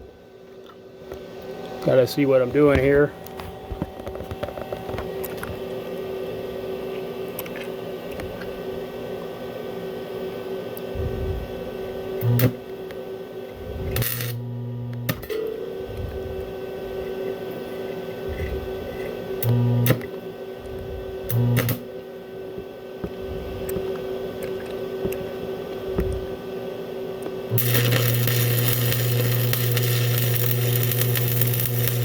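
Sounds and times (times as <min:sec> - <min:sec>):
steady hum: 0:00.0 - 0:32.0
welding arc hissing and crackling: 0:13.6 - 0:15.2, 0:21.0 - 0:21.8, 0:27.5 - 0:32.0.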